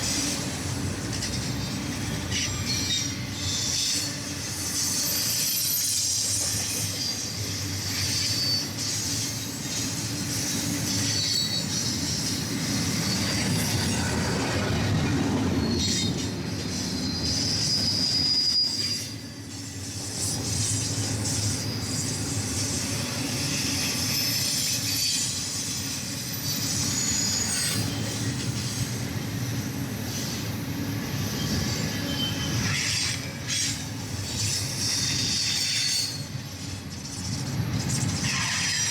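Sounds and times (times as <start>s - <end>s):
train wheels squealing: 0.0s - 38.9s
freight cars rumbling on rails: 6.0s - 18.4s.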